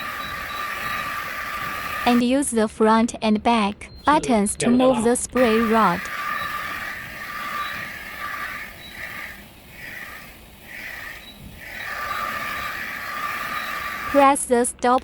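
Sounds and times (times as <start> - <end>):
spraying water hiss: 0.0 - 2.2, 5.4 - 14.6
steady whine: 0.0 - 2.3, 3.7 - 15.0.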